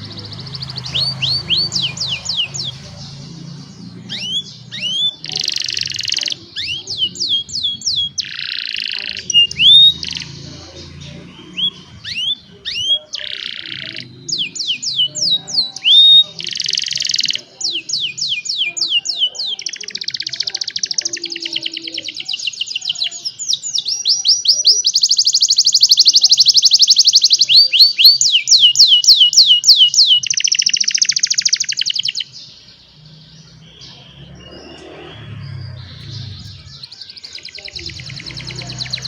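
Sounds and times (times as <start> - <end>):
canaries singing: 0.0 - 39.0
low rumble: 34.2 - 36.8.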